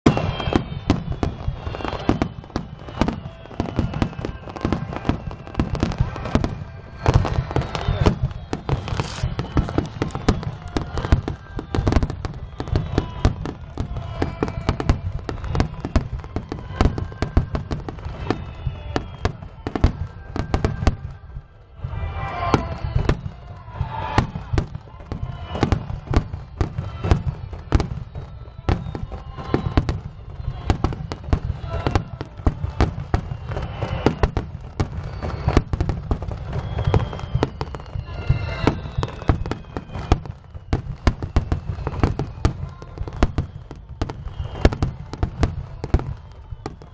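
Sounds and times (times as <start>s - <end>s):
descending firework whistles: 0.0s - 46.9s
firework shells bursting: 4.7s - 15.0s.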